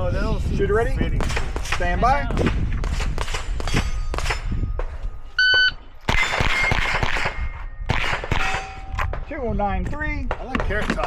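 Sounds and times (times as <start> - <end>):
shot timer beep: 5.4 - 5.8
rifle shots: 6.1 - 9.3.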